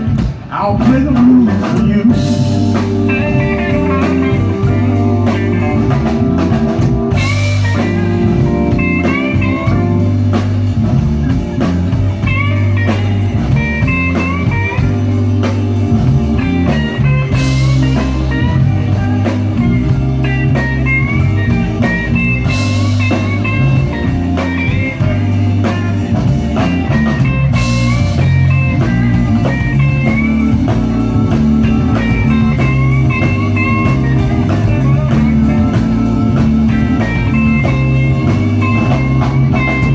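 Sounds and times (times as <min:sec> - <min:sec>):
bass and drums: 0:00.0 - 0:39.9
lead electric guitar: 0:00.0 - 0:39.9.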